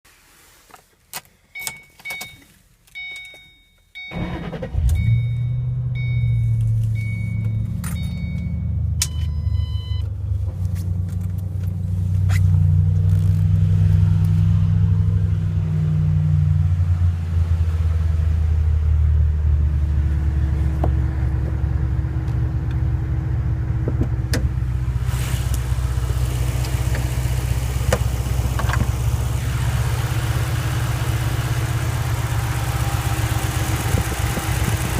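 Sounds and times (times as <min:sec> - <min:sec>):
car engine idling: 0:04.1 - 0:34.9
dash chime tones: 0:05.0 - 0:10.0.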